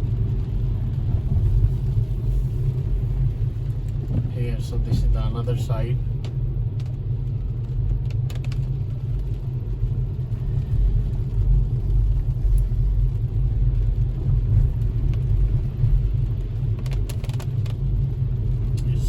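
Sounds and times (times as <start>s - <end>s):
vehicle driving rumble: 0.0s - 19.0s.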